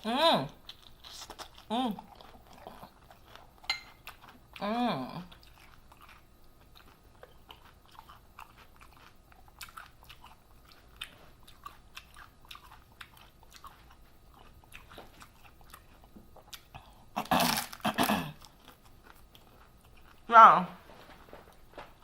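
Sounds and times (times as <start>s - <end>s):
person chewing close up: 0.5s - 20.3s
crunchy bite: 5.3s - 20.2s.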